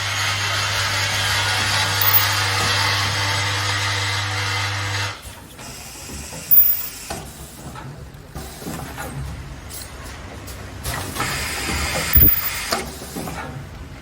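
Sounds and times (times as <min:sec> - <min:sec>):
machine humming: 0:01.8 - 0:02.9, 0:06.5 - 0:07.0, 0:12.2 - 0:12.6.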